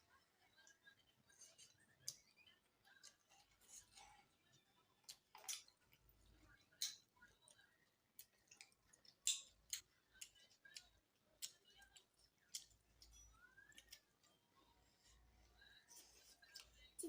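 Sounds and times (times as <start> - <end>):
chewing mouth clicks and smacks: 5.0 - 14.4.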